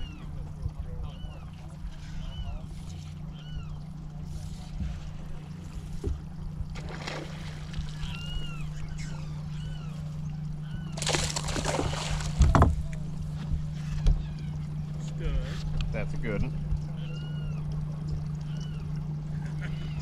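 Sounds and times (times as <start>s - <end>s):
steady low hum: 0.0s - 20.0s
splashy rush of water: 6.8s - 8.0s, 11.0s - 12.7s.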